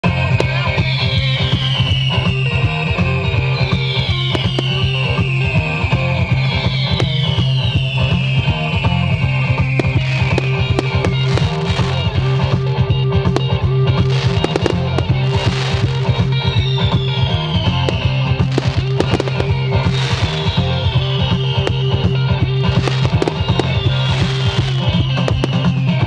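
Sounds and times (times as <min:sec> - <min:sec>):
fireworks popping and banging: 0:00.0 - 0:26.0
fireworks fizzing bursts: 0:00.3 - 0:01.8, 0:02.8 - 0:26.0.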